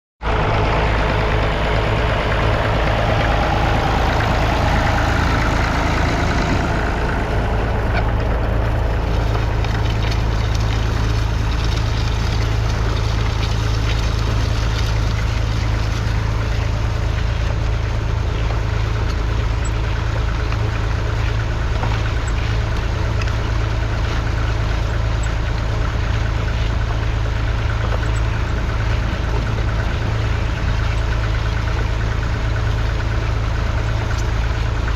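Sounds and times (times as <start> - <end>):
rush of noise: 0.2 - 18.2
diesel tractor engine running: 0.2 - 34.9.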